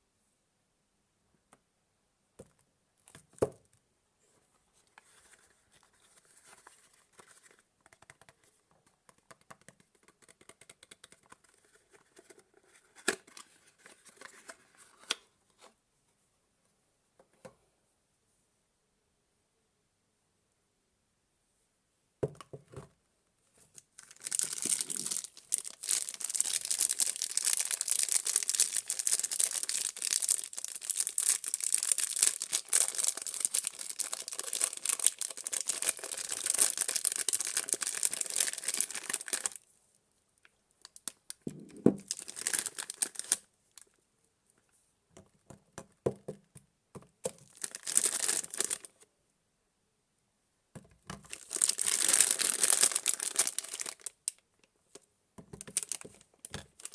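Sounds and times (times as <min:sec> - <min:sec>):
packaging crinkling and tearing: 0:24.0 - 0:39.6, 0:42.0 - 0:43.9, 0:47.4 - 0:49.0, 0:51.2 - 0:54.2, 0:55.6 - 0:56.9.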